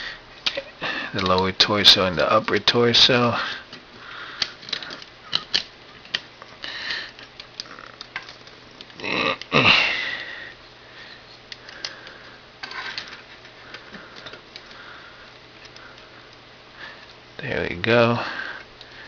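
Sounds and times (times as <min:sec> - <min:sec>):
plastic parts clicking: 0:00.4 - 0:02.6, 0:03.5 - 0:09.6, 0:11.1 - 0:17.2.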